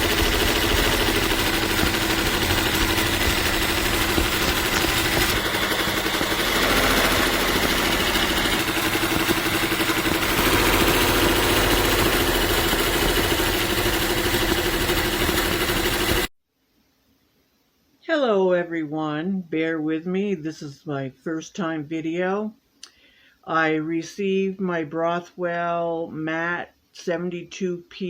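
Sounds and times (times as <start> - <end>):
machine humming and clattering: 0.0 - 16.3.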